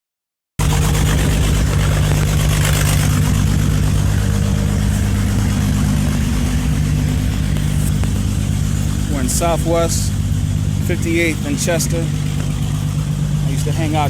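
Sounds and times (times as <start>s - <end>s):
large engine idling: 0.6s - 14.0s.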